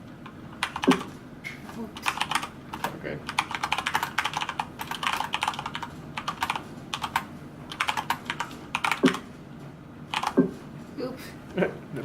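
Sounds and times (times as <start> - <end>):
mechanical keyboard typing: 0.6 - 1.1, 2.0 - 9.2, 10.1 - 10.5.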